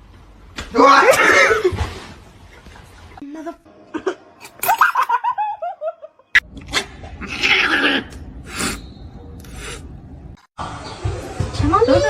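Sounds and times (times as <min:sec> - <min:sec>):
high-pitched laughter: 0:03.9 - 0:06.2.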